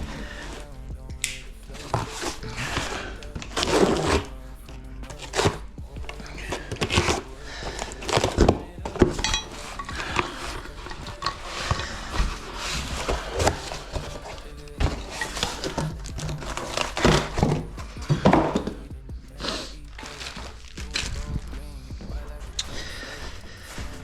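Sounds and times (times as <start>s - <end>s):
packaging rustling: 6.2s - 18.8s.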